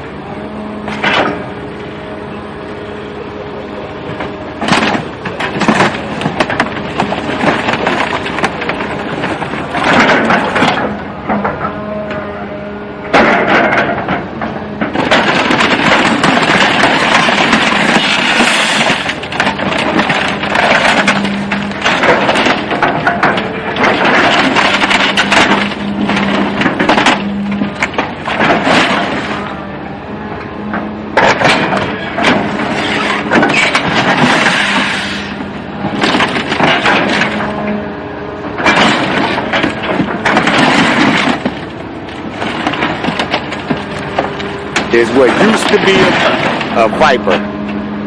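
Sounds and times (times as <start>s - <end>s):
vehicle hum: 0.0s - 48.0s
car crash crunching and scraping: 0.9s - 1.6s, 4.1s - 11.7s, 13.1s - 29.6s, 30.6s - 47.5s
sharp crash bangs: 31.1s - 37.7s.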